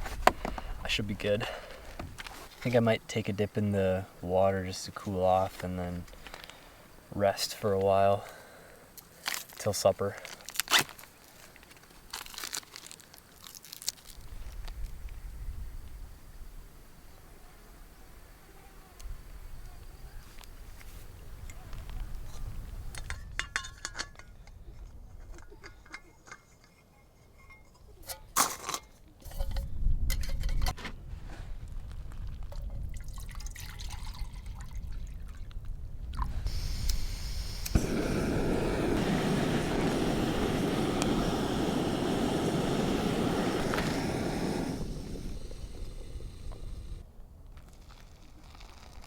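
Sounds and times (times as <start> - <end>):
water pouring in a stream: 32.9 - 35.0.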